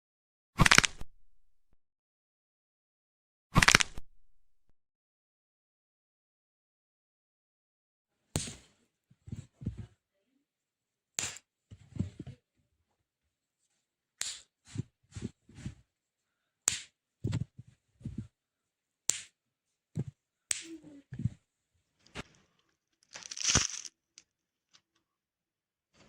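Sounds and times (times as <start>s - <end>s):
bone cracking and crunching: 23.0s - 23.9s.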